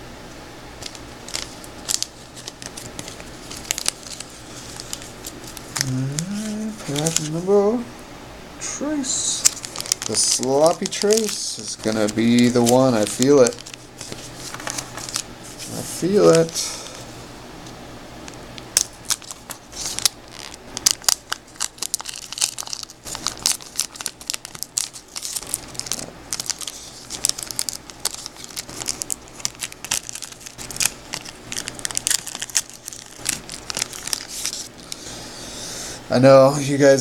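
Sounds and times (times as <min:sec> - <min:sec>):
plastic wrapper crinkling and tearing: 0:00.8 - 0:07.4, 0:09.4 - 0:16.6, 0:18.6 - 0:35.0.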